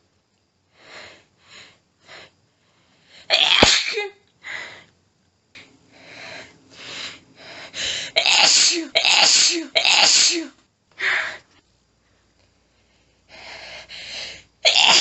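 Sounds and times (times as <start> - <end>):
woman panting breaths: 0.7 - 3.3, 4.4 - 5.0, 5.6 - 8.8, 11.0 - 11.5, 12.2 - 14.6
woman sneezing: 3.3 - 4.2, 8.2 - 10.5, 14.7 - 15.0.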